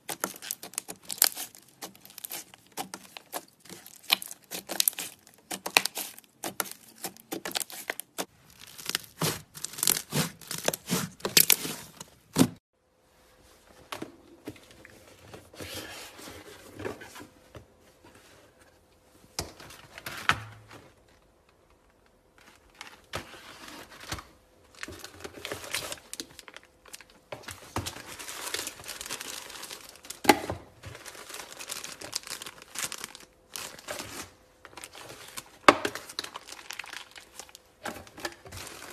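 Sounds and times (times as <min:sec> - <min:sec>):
slime crackling and popping: 0:00.0 - 0:11.6.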